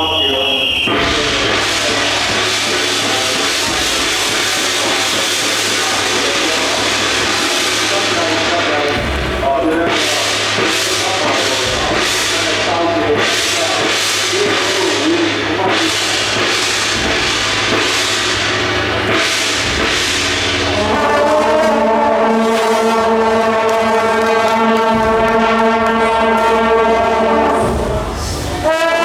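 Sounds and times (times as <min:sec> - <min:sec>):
loud sustained horn tone: 0:00.0 - 0:08.8, 0:17.0 - 0:29.0
cymbals crashing: 0:00.0 - 0:29.0
drums: 0:00.0 - 0:29.0.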